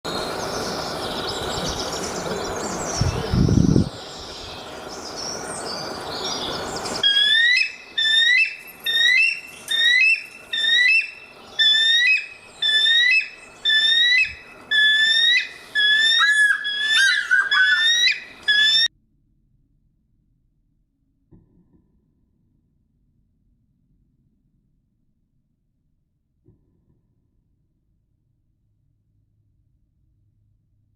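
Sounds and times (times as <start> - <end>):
eagle calling: 7.0 - 18.9.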